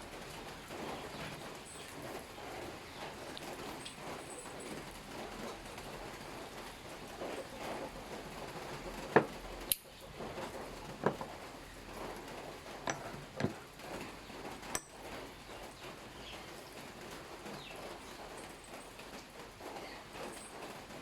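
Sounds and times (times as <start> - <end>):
metallic clinks and knocks: 12.8 - 13.6, 14.7 - 15.1.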